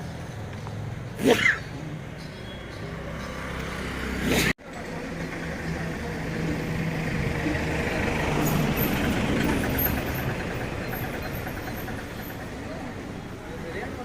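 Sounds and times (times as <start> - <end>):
engine running: 3.1 - 14.0.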